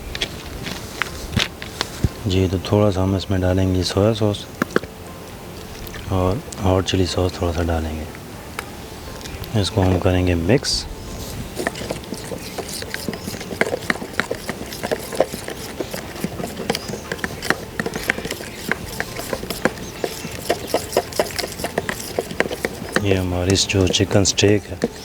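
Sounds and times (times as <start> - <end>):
spoon stirring thick marinade: 0.1 - 8.0, 8.6 - 25.0
spoon clicking against bowl: 11.6 - 25.0.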